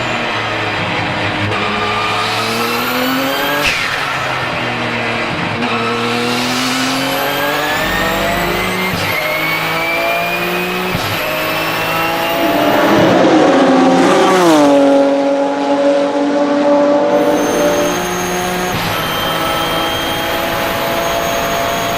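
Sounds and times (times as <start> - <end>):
race car engine accelerating: 0.0 - 21.9
turbo whistle: 5.7 - 14.6, 17.2 - 21.9.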